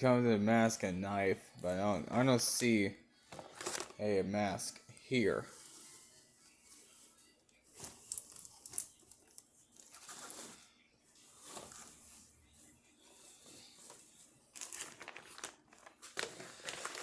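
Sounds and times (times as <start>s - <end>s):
packaging crinkling and rustling: 3.4s - 4.0s, 7.7s - 12.3s, 13.8s - 17.0s.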